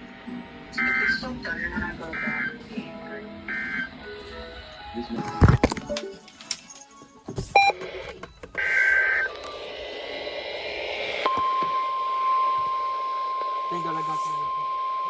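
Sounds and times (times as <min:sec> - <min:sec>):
two-tone data burst: 0:07.6 - 0:07.8.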